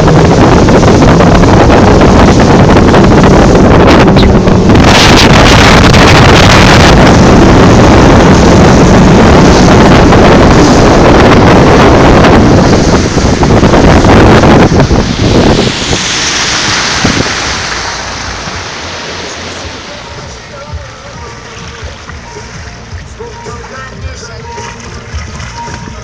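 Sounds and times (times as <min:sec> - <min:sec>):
outboard motor running: 0:00.0 - 0:26.0
water rushing against hull: 0:00.0 - 0:26.0
wind buffeting microphone: 0:00.0 - 0:26.0.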